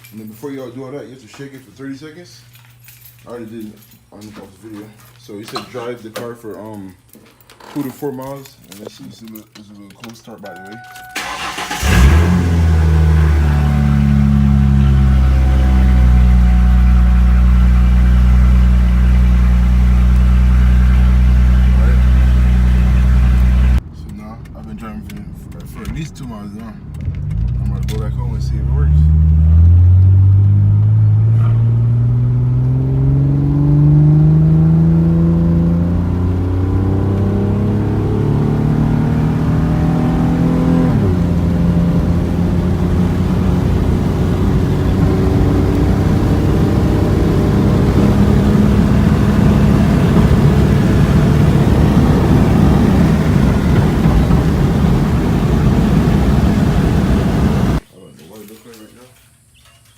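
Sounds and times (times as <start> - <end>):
road noise: 10.5 - 58.6
car engine accelerating: 11.2 - 23.8, 26.7 - 57.8.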